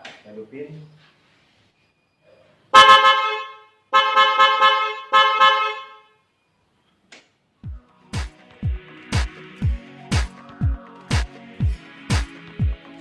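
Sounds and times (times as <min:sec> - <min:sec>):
motorcycle horns honking: 0:02.7 - 0:06.2.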